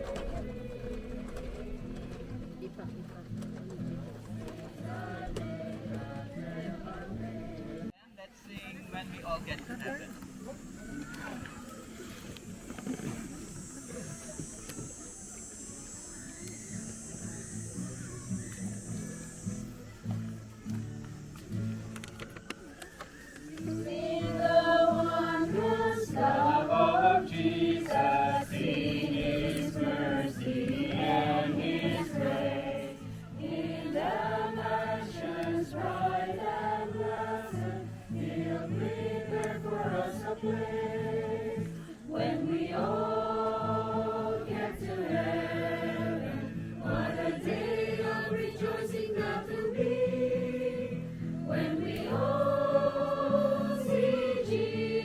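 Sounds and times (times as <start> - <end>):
group singing a hymn: 0.0 - 2.8, 4.0 - 7.9, 23.4 - 55.0.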